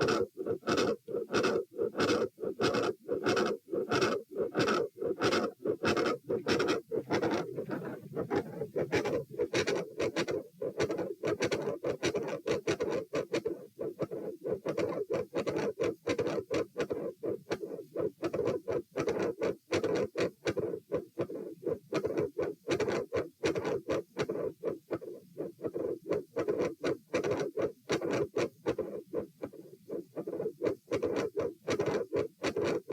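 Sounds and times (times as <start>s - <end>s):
heartbeat through stethoscope: 0.0s - 15.6s.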